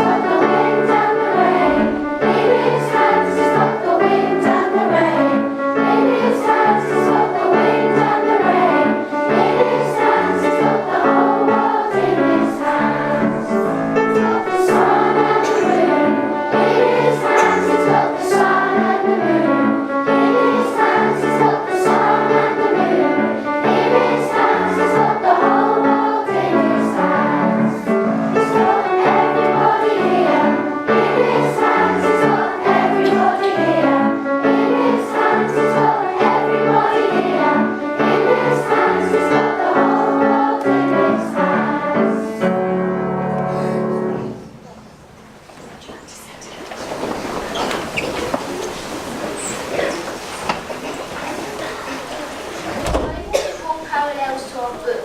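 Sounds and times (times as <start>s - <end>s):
children singing together: 0.0s - 44.6s, 46.6s - 55.0s
instrumental accompaniment: 0.0s - 45.2s.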